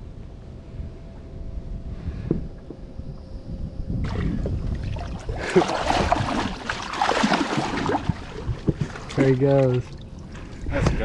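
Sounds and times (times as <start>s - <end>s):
low wind rumble: 0.0s - 11.0s
water splashing and sloshing: 4.0s - 11.0s.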